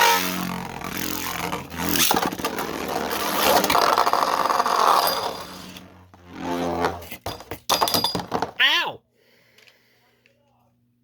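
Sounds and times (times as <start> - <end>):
spinning tops grinding and rattling: 0.0 - 8.4.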